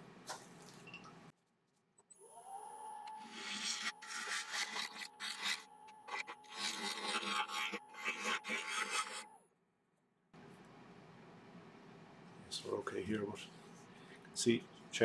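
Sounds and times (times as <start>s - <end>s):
turning tool scraping wood: 3.2s - 9.3s.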